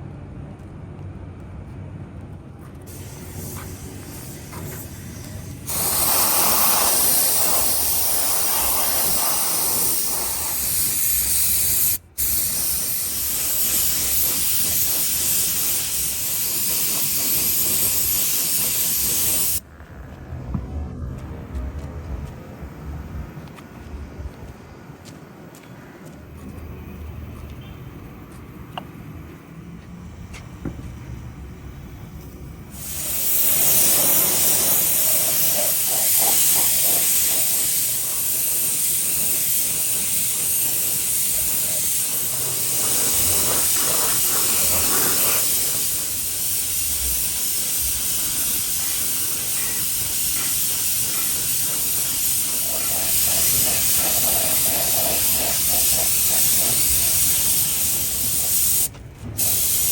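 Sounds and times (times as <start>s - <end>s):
spray or air jet hissing: 2.9s - 19.7s, 31.8s - 59.9s.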